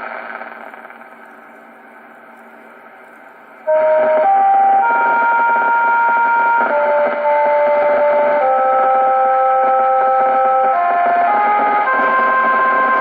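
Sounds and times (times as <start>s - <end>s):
faint steady hum: 0.0s - 13.0s
electronic chime melody over loudspeakers: 3.7s - 7.2s.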